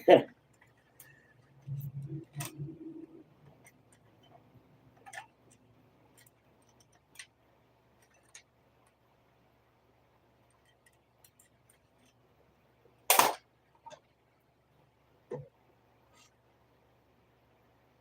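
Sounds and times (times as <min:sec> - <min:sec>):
plastic parts clicking: 0:03.5 - 0:07.4, 0:08.0 - 0:09.0.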